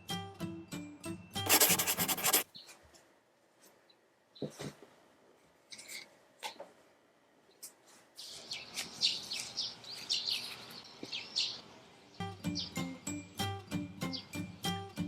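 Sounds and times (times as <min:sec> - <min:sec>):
small birds chirping: 0:08.2 - 0:13.0.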